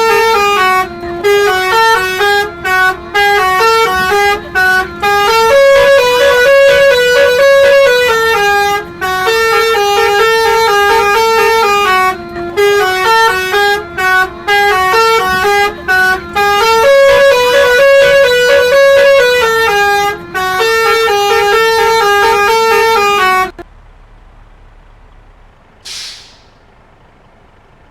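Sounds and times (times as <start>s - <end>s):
multi-tone bus horn melody: 0.0s - 23.6s, 25.9s - 26.6s
brief hiss: 25.8s - 26.7s.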